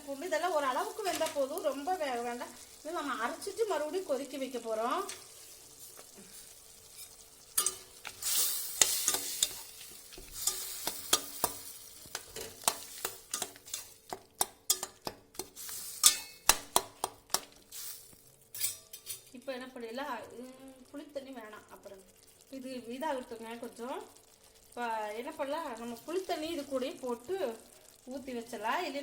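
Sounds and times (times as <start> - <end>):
food sizzling in oil: 0.0 - 29.0
spoon clicking against pan: 7.6 - 8.2, 8.8 - 9.6, 10.2 - 17.5.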